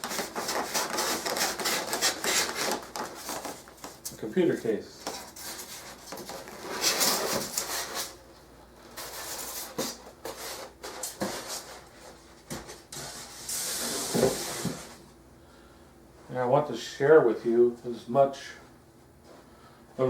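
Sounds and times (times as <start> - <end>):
cardboard box scraping and rustling: 5.4 - 8.1.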